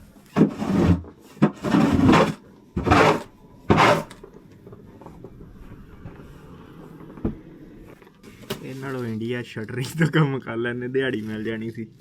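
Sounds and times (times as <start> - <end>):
snow shovel scraping snow: 1.6 - 4.1.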